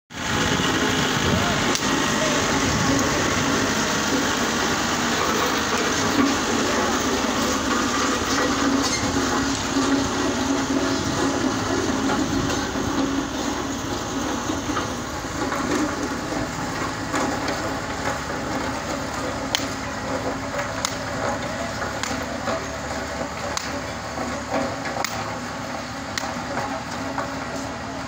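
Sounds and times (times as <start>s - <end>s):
tractor engine running: 0.1s - 28.0s.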